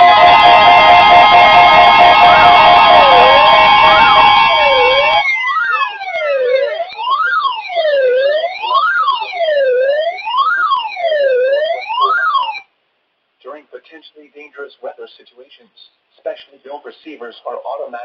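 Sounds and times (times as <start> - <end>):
electronic siren wailing: 0.0 - 12.7.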